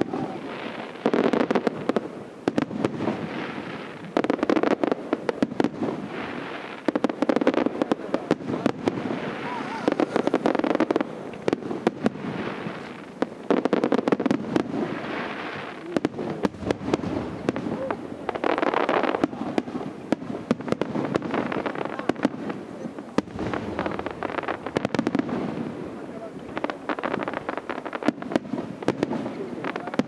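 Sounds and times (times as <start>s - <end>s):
fireworks bangs and pops: 0.0s - 30.0s
fireworks crackling: 0.0s - 30.0s.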